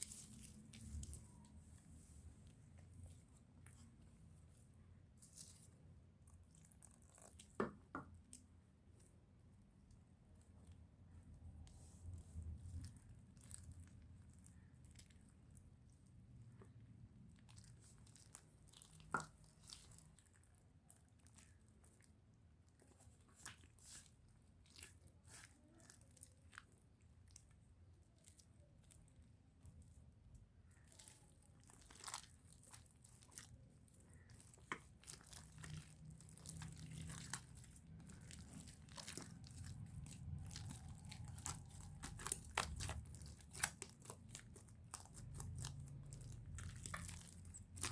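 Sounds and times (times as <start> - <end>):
sticky slime crackles and clicks: 30.7 - 47.9.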